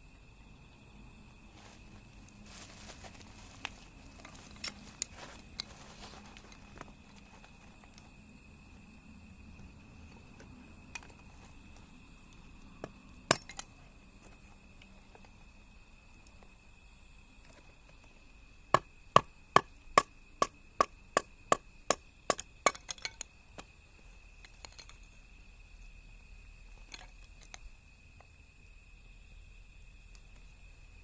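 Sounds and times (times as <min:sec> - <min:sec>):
axe chopping wood: 0:13.3 - 0:13.6.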